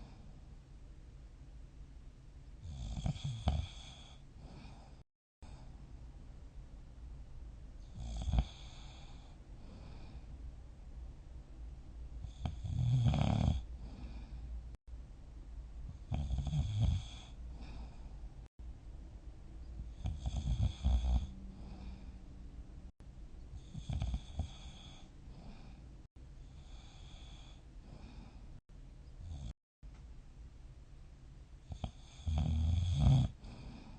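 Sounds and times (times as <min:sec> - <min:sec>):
person snoring: 0:02.6 - 0:05.0, 0:07.9 - 0:10.2, 0:12.2 - 0:14.4, 0:16.1 - 0:18.1, 0:19.9 - 0:22.2, 0:23.6 - 0:25.8, 0:26.5 - 0:28.4, 0:31.7 - 0:33.9.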